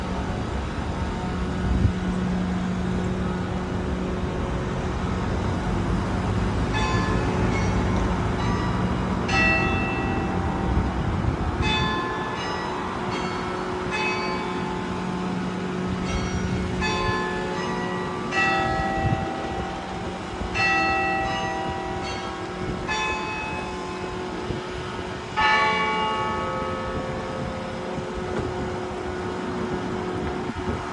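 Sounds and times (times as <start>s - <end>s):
vehicle engine hum: 0.0s - 11.6s
road traffic rumble: 0.0s - 30.9s
church bell strokes: 6.7s - 10.9s, 11.6s - 24.6s, 25.4s - 29.2s.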